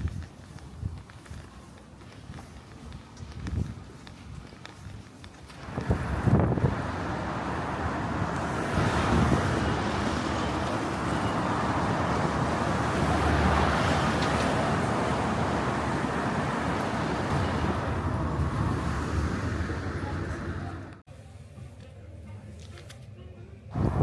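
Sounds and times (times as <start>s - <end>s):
cars passing by: 5.5s - 21.0s, 23.7s - 24.0s.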